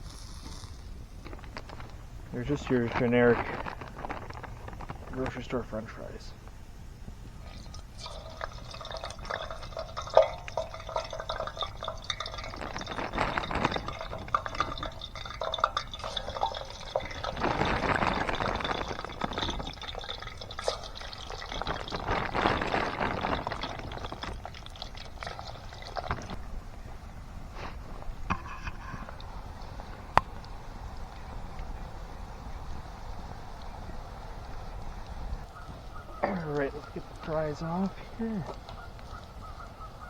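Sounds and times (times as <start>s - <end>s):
fries sizzling in hot oil: 7.1s - 26.5s, 27.6s - 39.6s.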